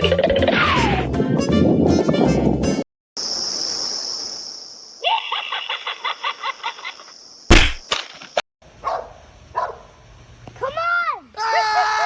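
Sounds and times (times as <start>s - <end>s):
high-pitched hiss: 3.2s - 5.0s
loud thump: 7.5s - 7.8s.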